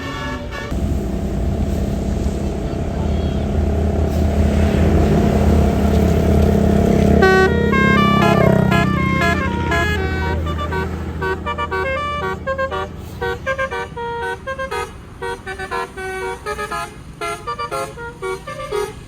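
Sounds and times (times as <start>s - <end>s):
bus musical horn tune: 0.0s - 19.0s
low rumble: 0.7s - 14.3s.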